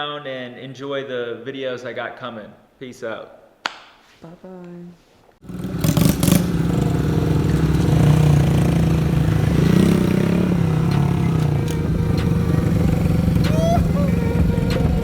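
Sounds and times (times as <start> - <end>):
motorcycle engine running: 5.4 - 15.0.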